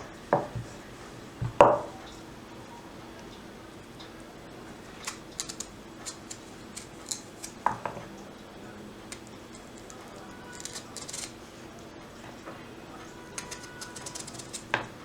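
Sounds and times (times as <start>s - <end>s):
kitchen utensils clicking and tapping: 13.4s - 15.0s.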